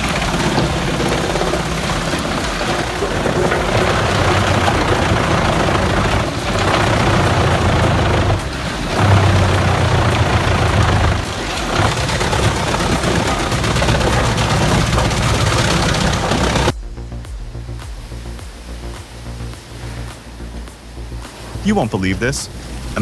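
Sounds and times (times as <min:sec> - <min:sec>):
wood chipper chewing wood: 0:00.0 - 0:16.7
engine drone: 0:00.0 - 0:23.0.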